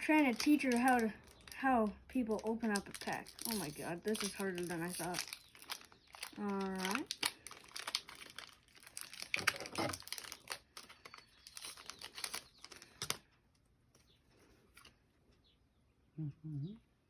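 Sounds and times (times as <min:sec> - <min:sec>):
foil wrapper crinkling and tearing: 0:00.0 - 0:13.3
faint handling sounds: 0:02.2 - 0:15.4.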